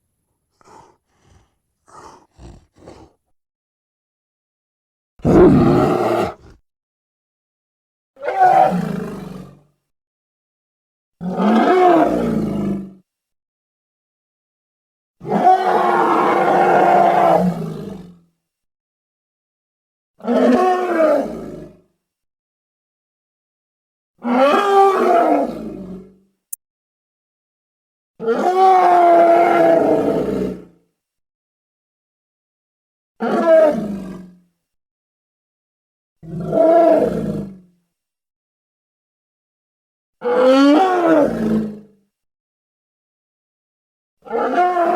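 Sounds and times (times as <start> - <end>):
gorilla roars: 0.6 - 3.2, 5.2 - 6.6, 15.2 - 18.1, 28.4 - 30.7, 36.2 - 37.6.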